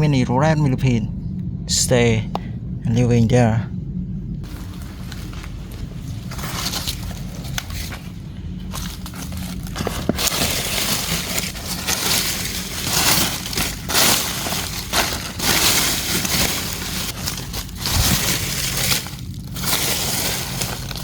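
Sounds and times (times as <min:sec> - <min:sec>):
dry leaves crunching underfoot: 0:04.4 - 0:21.0.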